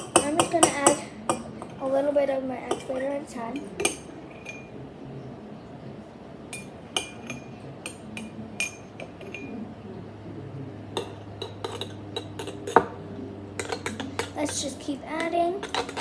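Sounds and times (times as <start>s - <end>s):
utensil clinking against bowl: 0.0s - 2.0s, 2.6s - 4.7s, 6.5s - 9.6s, 11.0s - 13.0s, 13.6s - 16.0s.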